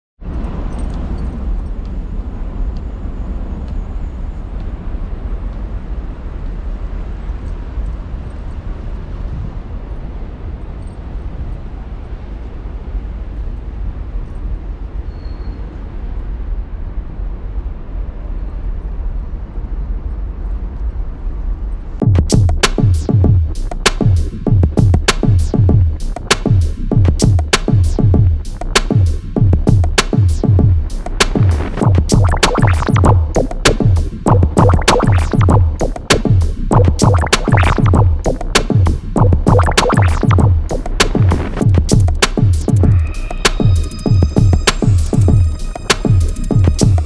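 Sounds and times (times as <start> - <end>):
wind: 0.2 - 22.0
music: 22.0 - 47.0.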